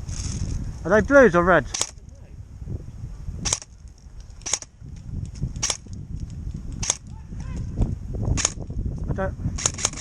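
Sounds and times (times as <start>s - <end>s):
wind rumble on microphone: 0.0s - 10.0s
airsoft gun shots: 3.4s - 3.7s, 4.4s - 4.7s, 8.3s - 8.6s.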